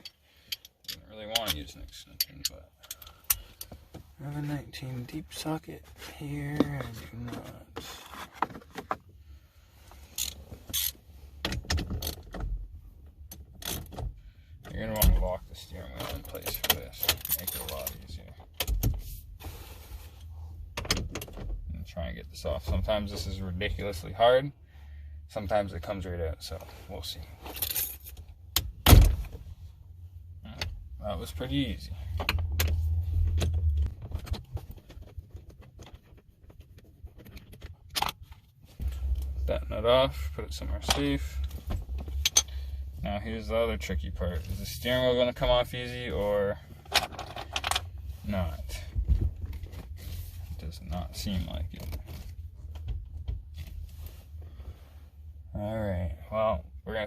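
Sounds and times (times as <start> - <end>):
dull low handling rumble: 9.0 - 57.0.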